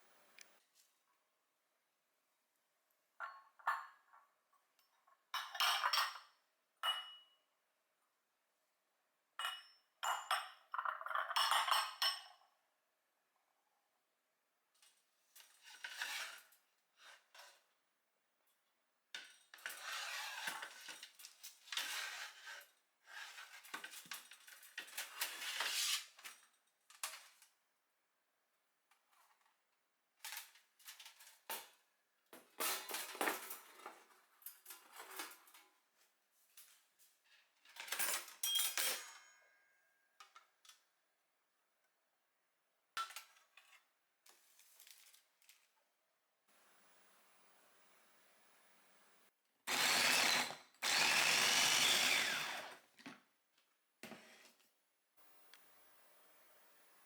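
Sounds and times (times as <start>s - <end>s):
dishes and cutlery clinking: 9.4s - 12.4s.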